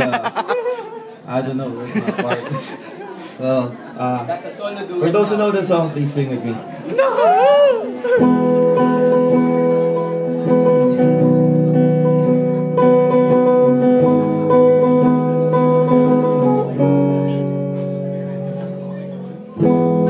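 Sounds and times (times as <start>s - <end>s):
acoustic guitar strumming chords: 8.2s - 20.0s.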